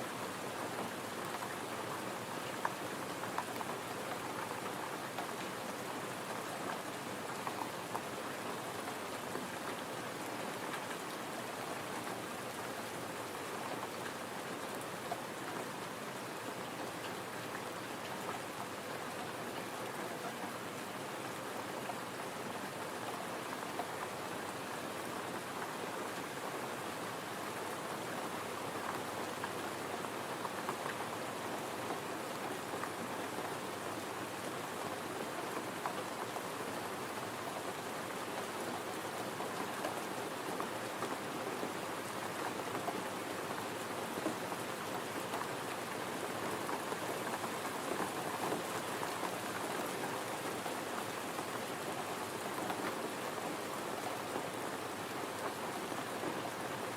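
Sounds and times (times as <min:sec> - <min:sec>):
gentle rain falling: 0:00.0 - 0:56.9.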